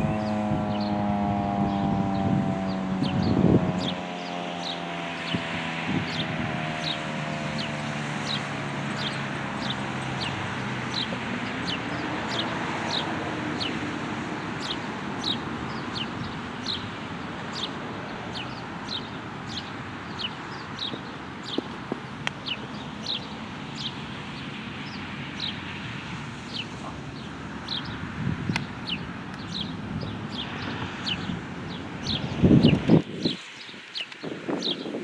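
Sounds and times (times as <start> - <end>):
outdoor noise: 0.0 - 35.0
bird chirping: 17.5 - 25.7, 26.5 - 35.0.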